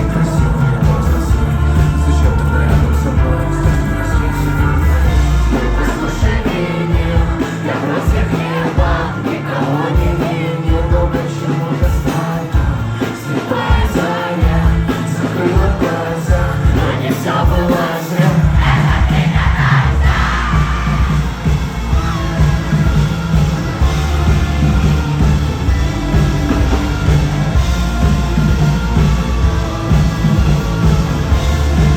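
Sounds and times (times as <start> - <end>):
person singing: 0.0 - 22.7
live rock band playing: 0.0 - 31.9.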